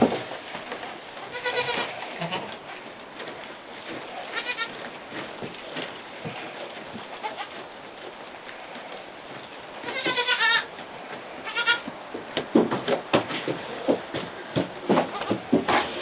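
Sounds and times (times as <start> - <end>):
baby goat bleating: 1.3 - 2.6, 4.3 - 4.7, 7.2 - 7.6, 9.8 - 10.7, 11.4 - 11.9.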